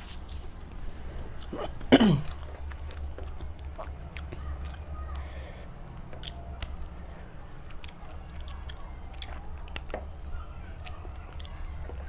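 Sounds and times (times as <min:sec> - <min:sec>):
low hum: 0:00.0 - 0:05.5
wet chewing: 0:00.4 - 0:05.3, 0:05.9 - 0:12.0.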